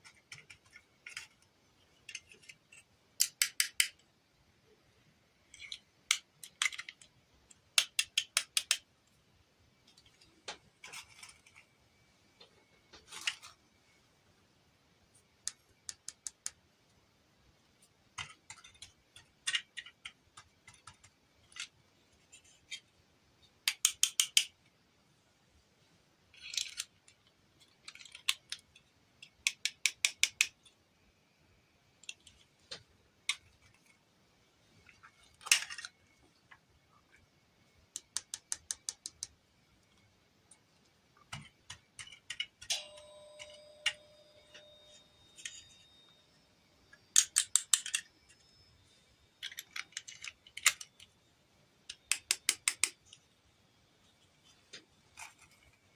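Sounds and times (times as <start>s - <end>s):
plastic pieces clicking and tapping: 0.0s - 4.1s, 5.4s - 9.2s, 15.2s - 16.6s, 17.8s - 24.7s, 26.4s - 30.8s, 32.0s - 34.0s, 34.8s - 37.2s, 37.9s - 42.8s, 47.1s - 48.4s, 49.4s - 51.2s, 51.8s - 53.2s.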